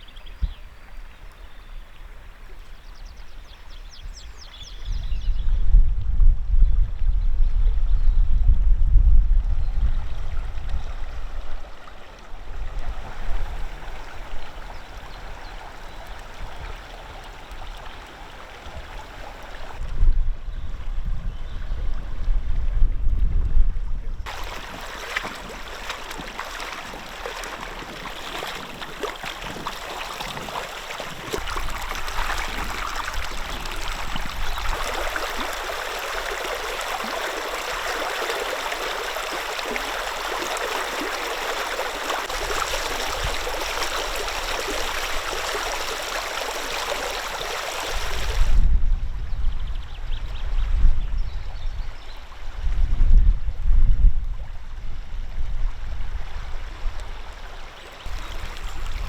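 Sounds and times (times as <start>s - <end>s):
river water rushing: 11.7s - 19.8s, 24.3s - 48.6s, 57.6s - 59.0s.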